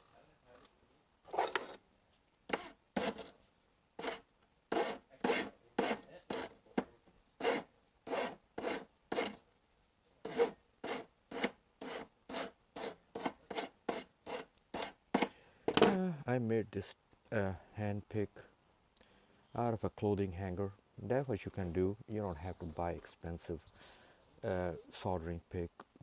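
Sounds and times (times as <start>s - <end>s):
file rasping on metal: 2.5s - 3.3s, 4.0s - 6.6s, 7.4s - 9.4s, 10.2s - 15.3s.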